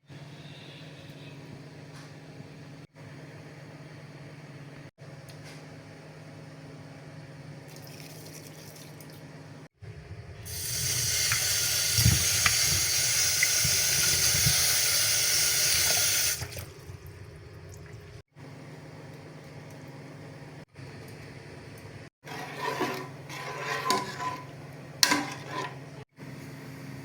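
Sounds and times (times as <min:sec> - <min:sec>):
steady low hum: 0:09.6 - 0:14.7
tap water running into sink: 0:10.5 - 0:18.2.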